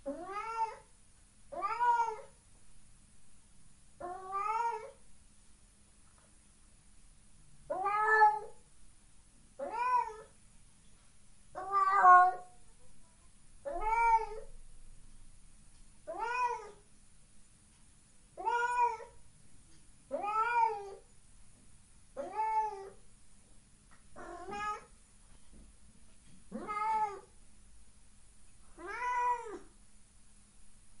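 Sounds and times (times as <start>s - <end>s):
cat meowing: 0.1s - 0.8s, 1.6s - 2.3s, 4.0s - 5.0s, 7.7s - 8.5s, 9.6s - 10.3s, 11.6s - 12.5s, 13.7s - 14.5s, 16.1s - 16.8s, 18.4s - 19.2s, 20.1s - 21.0s, 22.2s - 23.0s, 24.2s - 24.9s, 26.5s - 27.3s, 28.8s - 29.7s.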